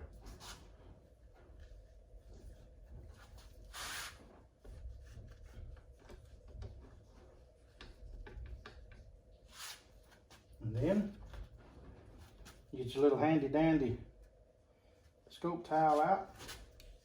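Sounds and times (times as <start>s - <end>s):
cloth wiping over metal: 0.1s - 13.4s.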